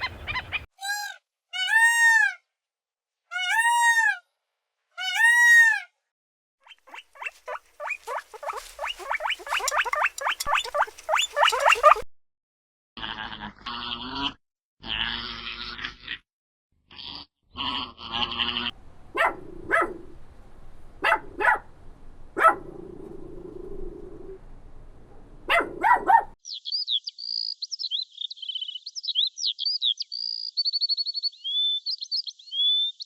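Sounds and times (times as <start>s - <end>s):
songbird singing: 0.0s - 0.7s, 6.7s - 12.0s, 18.7s - 33.0s
dog barking: 19.1s - 20.2s, 21.0s - 21.7s, 22.4s - 22.7s, 25.5s - 26.4s.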